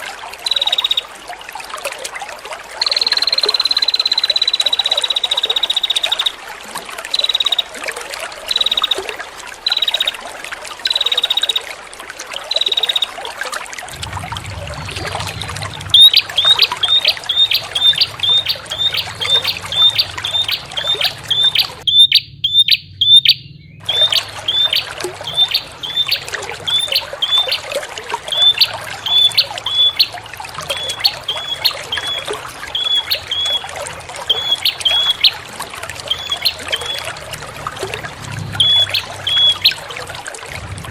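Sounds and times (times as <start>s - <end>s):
trickling water: 0.0s - 40.9s
bird calling: 0.4s - 1.1s, 2.8s - 6.4s, 7.0s - 11.7s, 12.5s - 13.2s, 14.9s - 37.3s, 38.5s - 40.0s
fast high bird chirps: 0.4s - 1.1s, 2.8s - 6.4s, 7.1s - 7.8s, 8.5s - 10.2s, 10.8s - 11.7s, 12.5s - 13.2s, 15.9s - 35.4s, 36.1s - 37.1s, 38.6s - 39.8s.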